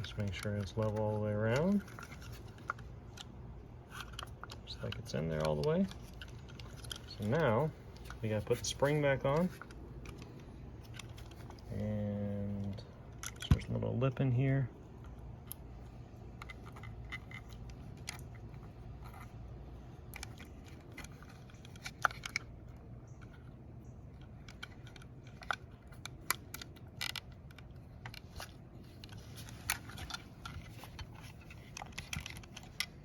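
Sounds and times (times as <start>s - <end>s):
hands handling small parts: 0.0s - 33.0s
plastic and metal parts knocking: 24.1s - 33.0s.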